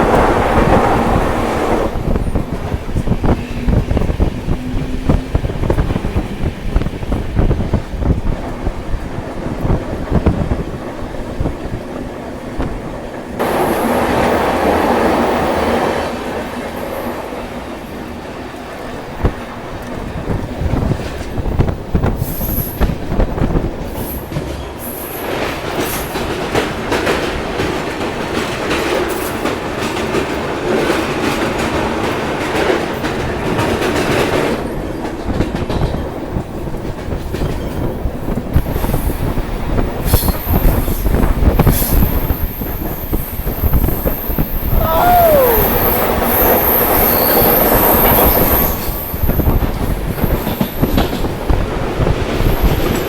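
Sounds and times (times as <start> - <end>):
train wheels clattering: 0.0 - 45.4, 46.0 - 53.0.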